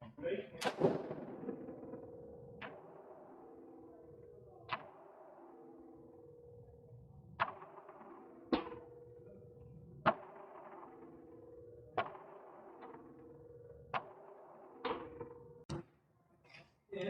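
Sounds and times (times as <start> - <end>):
gunshots: 0.6 - 3.9.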